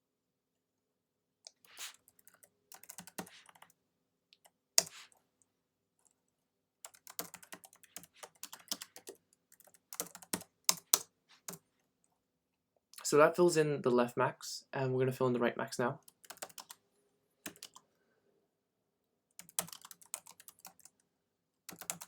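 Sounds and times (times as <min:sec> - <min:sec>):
computer keyboard typing: 0:01.5 - 0:03.7, 0:06.8 - 0:11.6, 0:16.1 - 0:16.8, 0:17.5 - 0:17.8, 0:19.4 - 0:21.0, 0:21.7 - 0:22.0.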